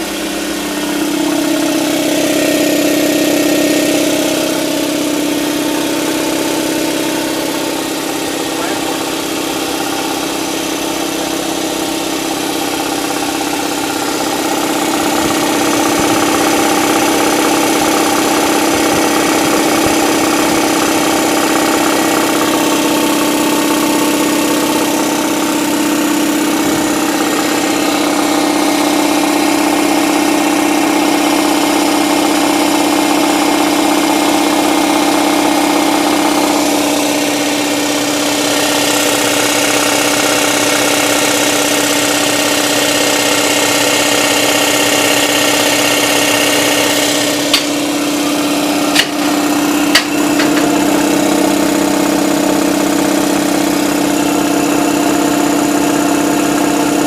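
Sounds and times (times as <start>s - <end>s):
air compressor running: 0.0s - 57.0s.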